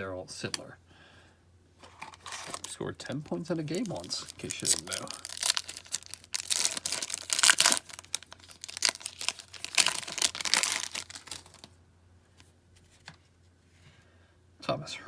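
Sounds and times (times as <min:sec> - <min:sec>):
wrapper tearing and crinkling: 0:01.9 - 0:02.7, 0:03.6 - 0:11.7.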